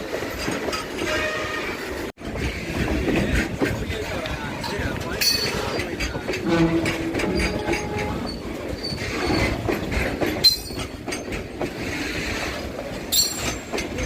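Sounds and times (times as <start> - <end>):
train rumble and rail clatter: 0.0 - 14.0
metallic wheel squeals: 5.2 - 11.3, 13.1 - 13.7.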